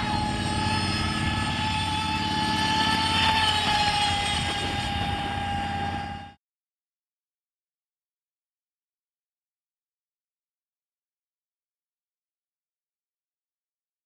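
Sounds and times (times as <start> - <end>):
toy boat motor whining: 0.0 - 6.4.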